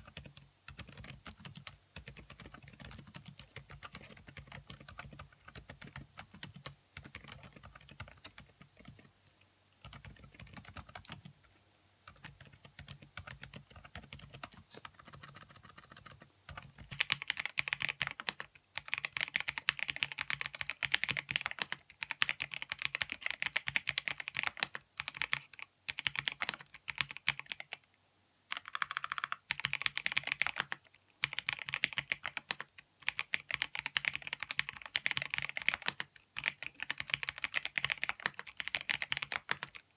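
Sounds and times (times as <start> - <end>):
mechanical keyboard typing: 0.0 - 9.1, 9.8 - 11.4, 12.1 - 27.8, 28.5 - 39.8.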